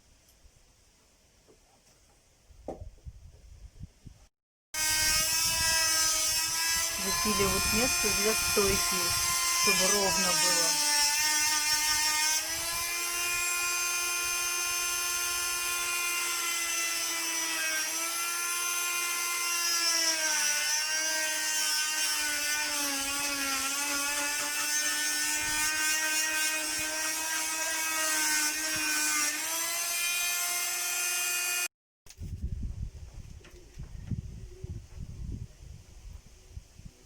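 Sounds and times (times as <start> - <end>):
electric drill motor whining: 4.8 - 31.7.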